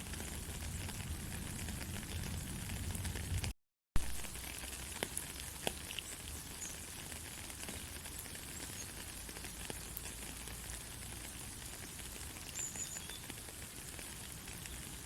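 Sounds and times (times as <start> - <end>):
steady rain falling: 0.0 - 15.0
drip ticks: 4.6 - 14.9.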